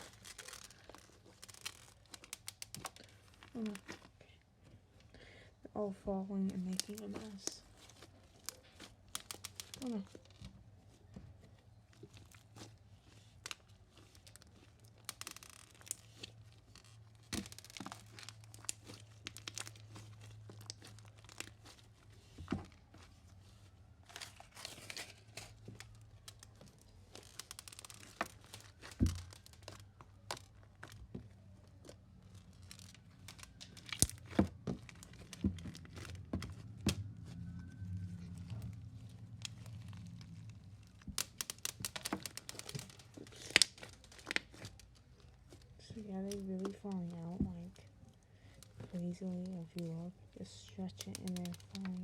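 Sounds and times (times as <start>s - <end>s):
sticky slime crackles and clicks: 0.0s - 4.2s, 6.5s - 52.0s
beads dropping: 24.1s - 37.7s.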